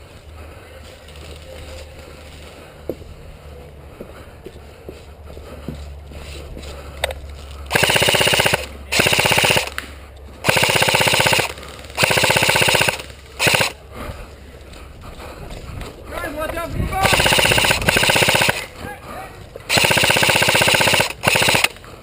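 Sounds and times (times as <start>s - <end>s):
airsoft gun firing full auto: 7.7s - 9.8s, 10.4s - 13.8s, 17.0s - 18.7s, 19.7s - 21.8s.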